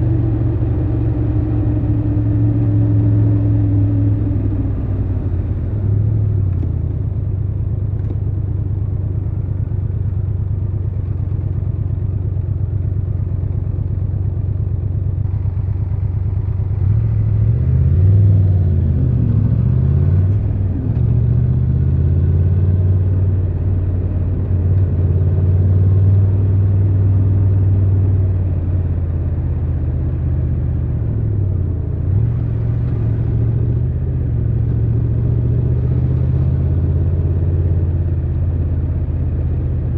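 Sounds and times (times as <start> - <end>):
motorcycle engine running: 0.0 - 17.8.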